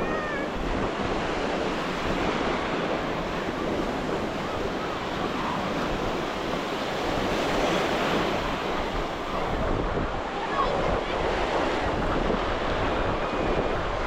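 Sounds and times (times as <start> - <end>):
surf washing onto beach: 0.0 - 14.0
wind buffeting microphone: 0.0 - 14.0.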